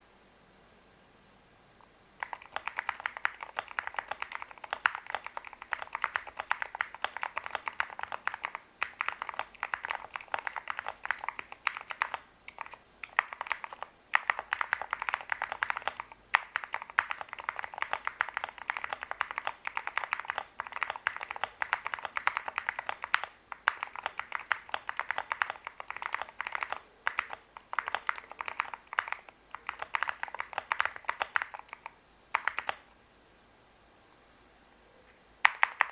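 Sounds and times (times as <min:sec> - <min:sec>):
mechanical keyboard typing: 0:02.2 - 0:32.8, 0:35.4 - 0:35.9.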